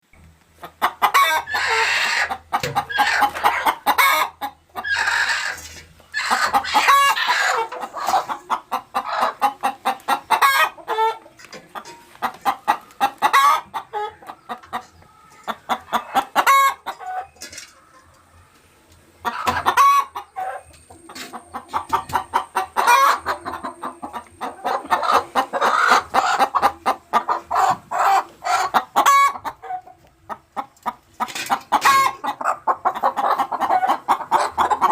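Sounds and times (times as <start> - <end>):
hens cackling: 0.4 - 34.9.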